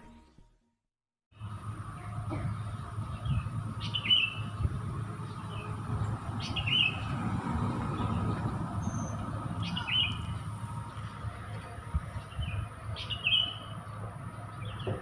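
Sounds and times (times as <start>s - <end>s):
bird chirping: 2.0s - 7.1s, 8.8s - 11.1s, 12.2s - 15.0s.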